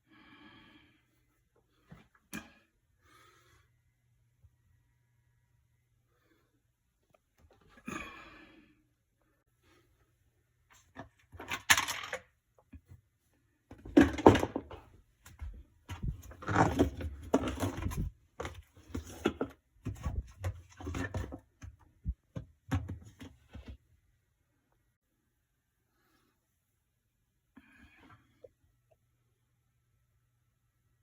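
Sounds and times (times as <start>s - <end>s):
objects knocking and clunking: 10.8s - 13.0s, 13.7s - 23.8s.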